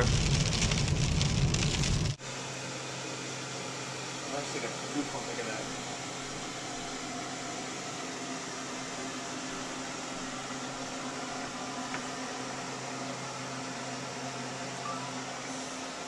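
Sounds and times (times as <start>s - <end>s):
fan motor humming: 0.0s - 16.0s.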